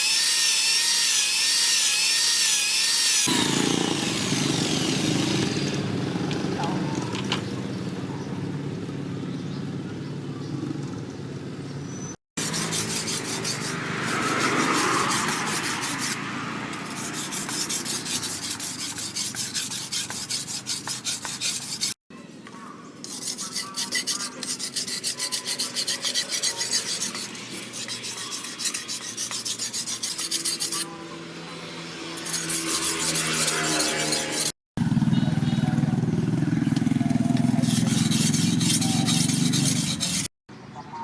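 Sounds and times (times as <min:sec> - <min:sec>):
knife rasping on sharpening stone: 0:12.4 - 0:16.2, 0:16.8 - 0:22.0, 0:23.0 - 0:31.0, 0:32.2 - 0:34.6.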